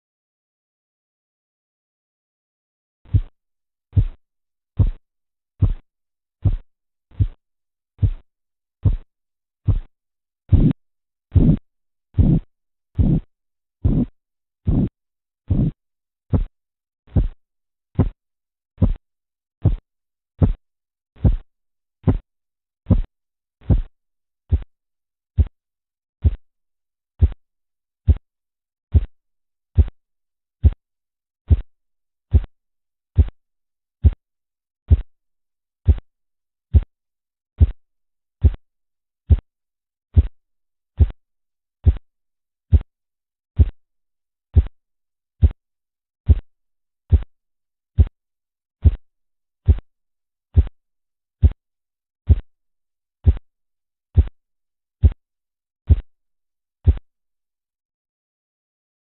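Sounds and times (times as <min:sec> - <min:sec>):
heartbeat thumps through stethoscope: 0:03.1 - 0:04.2, 0:04.8 - 0:05.0, 0:05.6 - 0:05.8, 0:06.4 - 0:07.4, 0:08.0 - 0:09.9, 0:10.5 - 0:11.6, 0:12.2 - 0:16.5, 0:17.1 - 0:17.4, 0:18.0 - 0:18.2, 0:18.8 - 0:19.0, 0:19.6 - 0:19.8, 0:20.4 - 0:20.6, 0:21.2 - 0:23.9, 0:24.5 - 0:24.7, 0:25.4 - 0:25.6, 0:26.2 - 0:26.4, 0:27.1 - 0:27.4, 0:28.0 - 0:28.2, 0:28.9 - 0:29.1, 0:29.8 - 0:30.0, 0:30.6 - 0:30.8, 0:31.5 - 0:31.7, 0:32.3 - 0:32.5, 0:33.2 - 0:33.4, 0:34.9 - 0:35.1, 0:35.8 - 0:36.0, 0:36.7 - 0:36.9, 0:37.6 - 0:37.8, 0:38.4 - 0:38.6, 0:39.3 - 0:39.5, 0:40.2 - 0:40.4, 0:41.0 - 0:41.2, 0:41.8 - 0:42.0, 0:43.6 - 0:43.8, 0:44.5 - 0:44.7, 0:45.4 - 0:45.6, 0:46.3 - 0:46.5, 0:47.1 - 0:47.3, 0:48.0 - 0:48.2, 0:48.8 - 0:49.0, 0:49.6 - 0:49.9, 0:51.4 - 0:51.6, 0:52.3 - 0:52.5, 0:53.2 - 0:53.4, 0:55.9 - 0:56.1, 0:56.8 - 0:57.0.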